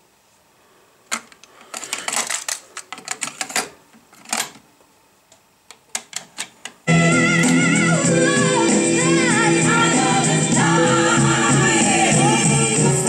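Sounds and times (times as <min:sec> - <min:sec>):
song playing: 0:06.9 - 0:13.0.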